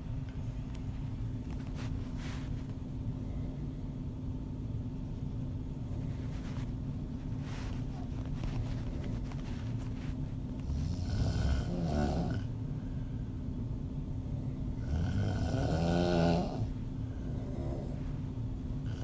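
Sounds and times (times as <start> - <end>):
steady low rumble: 0.0 - 19.0
woman snoring: 10.6 - 12.5, 14.8 - 18.0.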